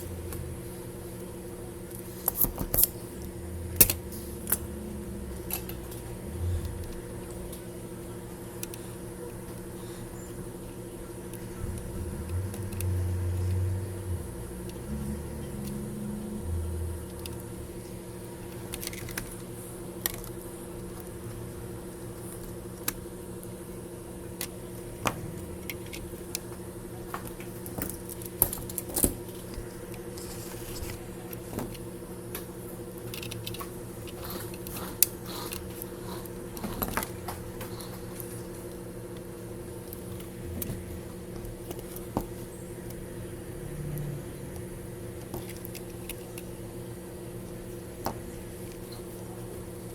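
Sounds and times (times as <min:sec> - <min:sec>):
steady electrical hum: 0:00.0 - 0:49.9
low drone: 0:03.0 - 0:07.8, 0:11.4 - 0:18.9, 0:43.0 - 0:45.2.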